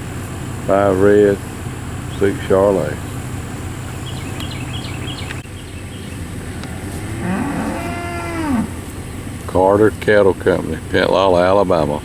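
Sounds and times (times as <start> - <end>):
steady low hum: 0.0 - 12.0
cow mooing: 6.5 - 8.9.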